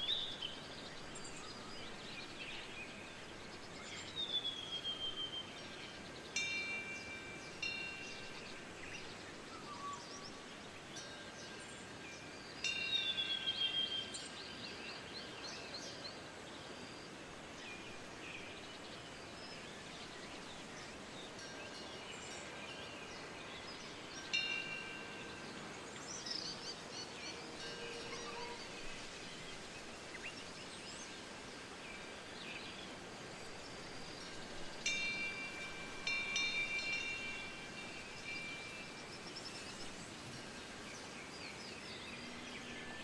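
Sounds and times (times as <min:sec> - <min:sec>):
wind: 0:00.0 - 0:43.0
metal wind bell chiming: 0:05.6 - 0:14.4, 0:20.4 - 0:32.9, 0:33.6 - 0:43.0
birds chirping: 0:31.9 - 0:43.0.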